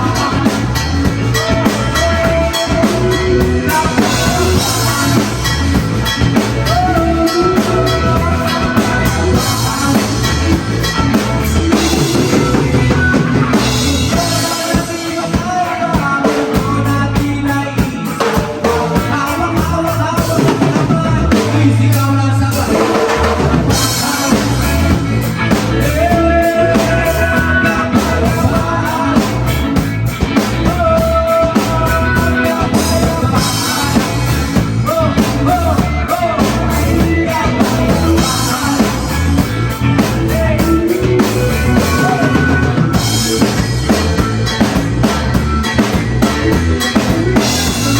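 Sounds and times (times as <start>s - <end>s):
person singing: 0.0s - 47.9s
rock band playing: 0.0s - 47.9s.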